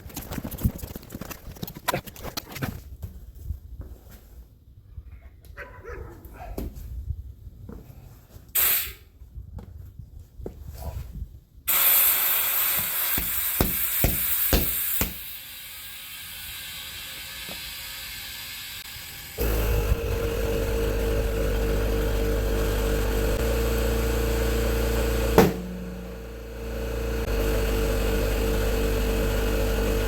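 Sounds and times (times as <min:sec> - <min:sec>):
compressed air hissing into tire: 0:08.6 - 0:09.0, 0:11.7 - 0:19.5
short puff of air: 0:08.6 - 0:09.1.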